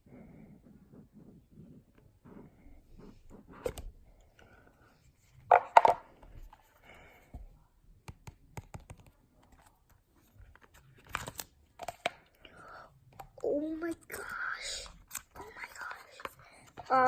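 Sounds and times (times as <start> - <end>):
packaging handling clicks and taps: 10.5 - 12.3.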